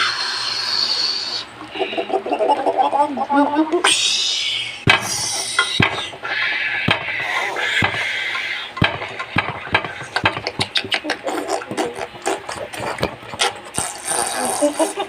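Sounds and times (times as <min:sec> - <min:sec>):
coffee machine hissing: 0:00.0 - 0:01.6, 0:03.8 - 0:10.7, 0:12.6 - 0:15.0.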